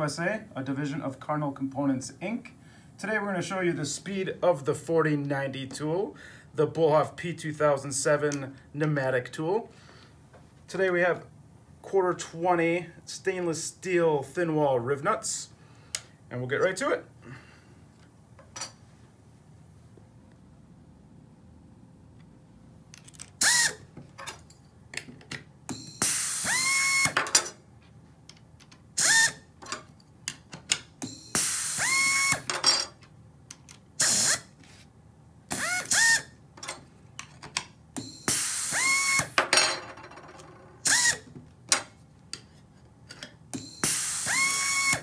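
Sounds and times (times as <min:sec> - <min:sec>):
pneumatic tool whirring: 0:23.4 - 0:23.9, 0:25.7 - 0:27.2, 0:29.0 - 0:29.4, 0:31.0 - 0:32.5, 0:34.0 - 0:34.6, 0:35.5 - 0:36.3, 0:38.0 - 0:39.4, 0:40.8 - 0:41.3, 0:43.5 - 0:45.0.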